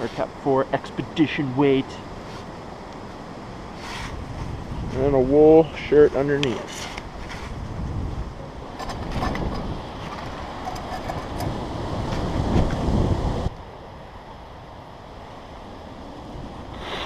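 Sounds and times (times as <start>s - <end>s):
wind buffeting microphone: 2.0s - 13.6s.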